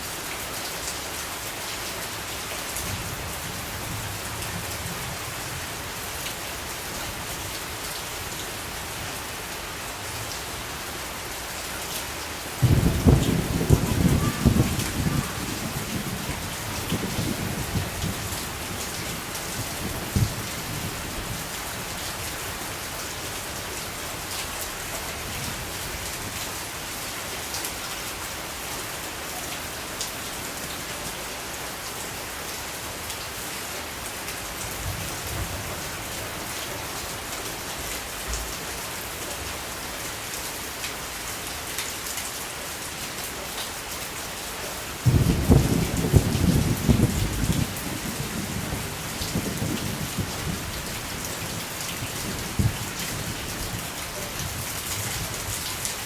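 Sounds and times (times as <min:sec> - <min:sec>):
steady rain: 0:00.0 - 0:56.0
low rumble of thunder: 0:12.6 - 0:22.6, 0:45.0 - 0:56.0.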